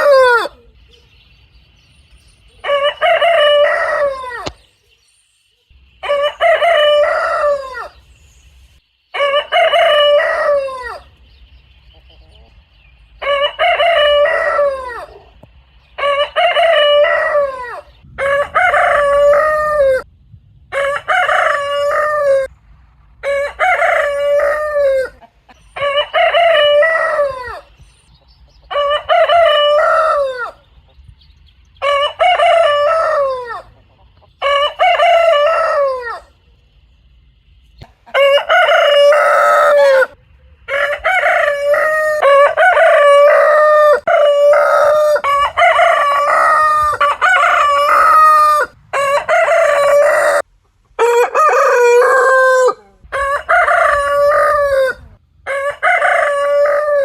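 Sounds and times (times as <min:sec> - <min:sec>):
rooster crowing: 0:00.0 - 0:00.7, 0:02.6 - 0:04.5, 0:06.0 - 0:08.0, 0:09.1 - 0:11.1, 0:13.2 - 0:15.4, 0:16.0 - 0:20.1, 0:20.7 - 0:22.5, 0:23.2 - 0:27.8, 0:28.7 - 0:30.6, 0:31.8 - 0:33.8, 0:34.4 - 0:36.4, 0:38.1 - 0:57.0.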